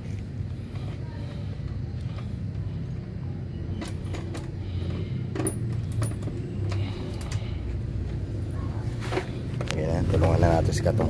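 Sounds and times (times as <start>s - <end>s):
steady low hum: 0.0s - 11.0s
metallic clinks and rattles: 3.8s - 7.5s.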